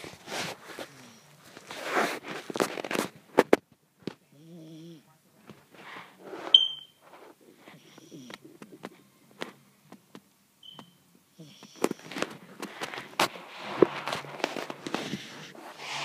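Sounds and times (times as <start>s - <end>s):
dog snoring: 4.3s - 5.1s, 7.8s - 8.4s
short high beep: 6.6s - 7.0s.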